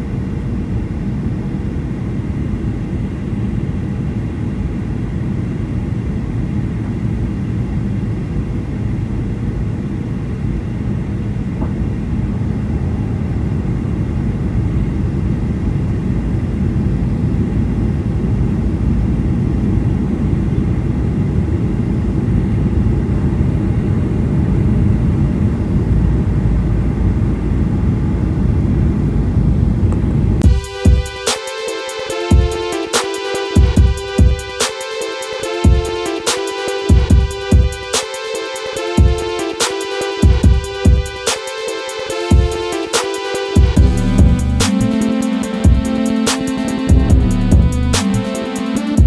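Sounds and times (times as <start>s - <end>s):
airliner cabin rumble: 0.1s - 30.4s
faint steady tones: 30.4s - 49.0s.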